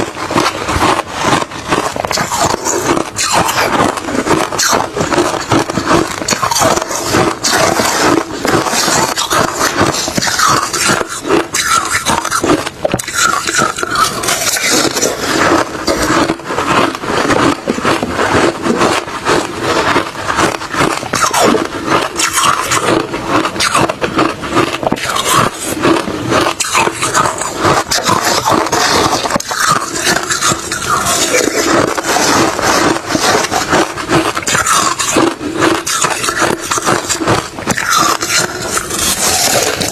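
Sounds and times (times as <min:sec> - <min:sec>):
person chewing crushed ice: 0:00.0 - 0:39.9.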